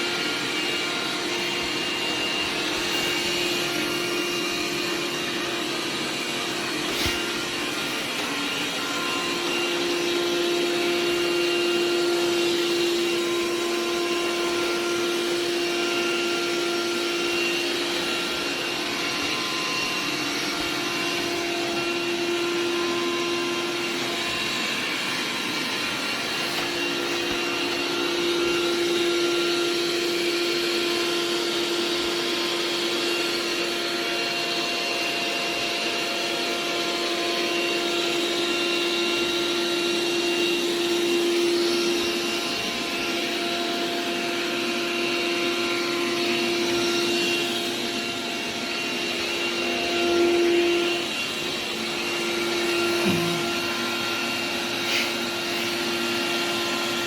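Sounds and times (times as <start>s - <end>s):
robot vacuum fan whooshing: 0.0s - 29.4s.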